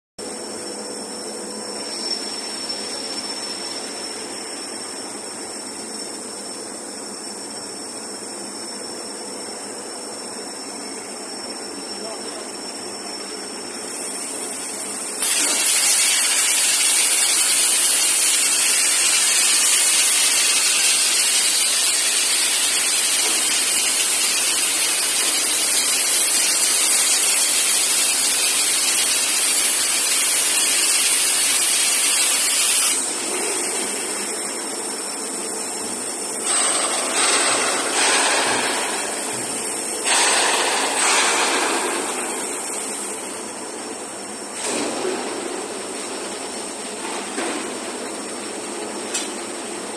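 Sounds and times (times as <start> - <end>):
cutting torch hissing: 13.8 - 43.4.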